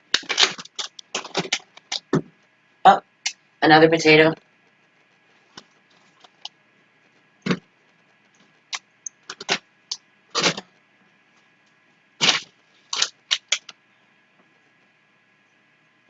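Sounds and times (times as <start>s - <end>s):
packaging rustling: 0.1s - 2.2s, 5.4s - 6.5s, 9.2s - 9.6s, 10.4s - 10.6s, 12.2s - 13.7s
packaging knocks and crinkles: 0.1s - 2.3s, 10.4s - 10.6s, 12.2s - 13.7s.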